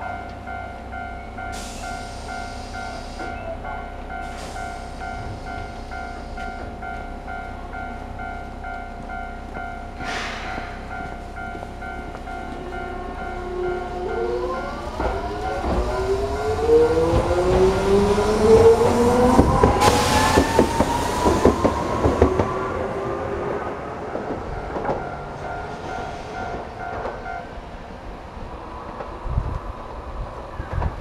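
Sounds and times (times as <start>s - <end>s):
level crossing alarm ringing: 0.0s - 10.0s, 10.6s - 27.6s
train motors whining: 8.6s - 27.6s
wheels clacking over rail joints: 23.6s - 27.5s.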